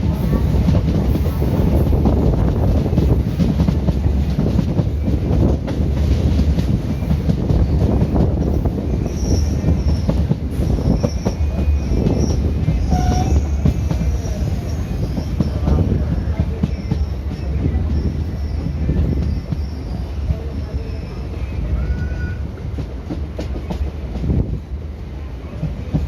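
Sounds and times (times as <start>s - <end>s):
train rumbling on rails: 0.0s - 26.0s
high-pitched wheel squeals: 9.0s - 10.2s.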